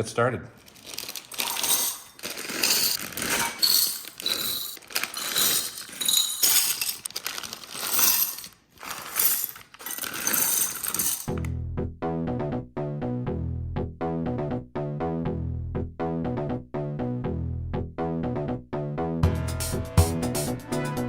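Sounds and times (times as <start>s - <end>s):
plastic bags rustling: 0.6s - 11.5s
plastic bricks rattling: 0.6s - 11.5s.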